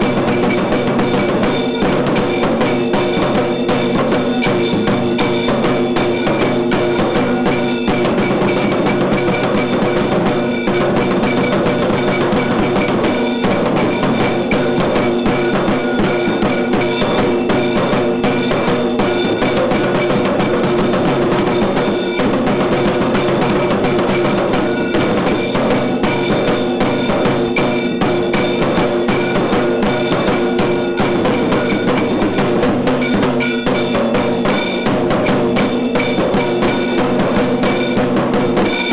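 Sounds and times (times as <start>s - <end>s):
fast dense drumming: 0.0s - 38.9s.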